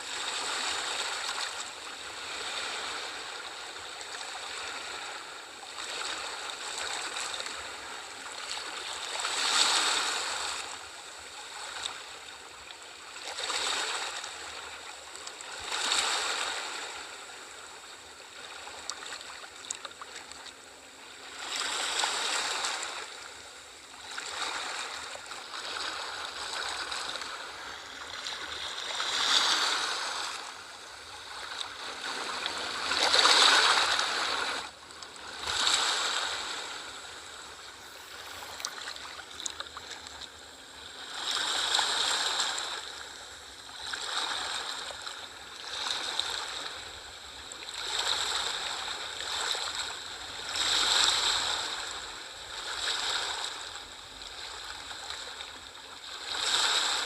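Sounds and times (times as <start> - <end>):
sea waves washing onto shore: 21.4 - 45.1.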